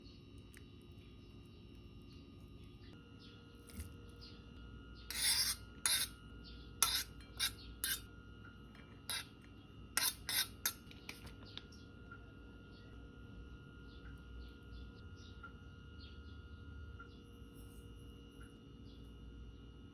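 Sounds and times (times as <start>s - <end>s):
faint steady hum: 0.0s - 19.9s
short scraping strokes: 5.1s - 6.2s, 6.8s - 8.1s, 9.1s - 9.3s.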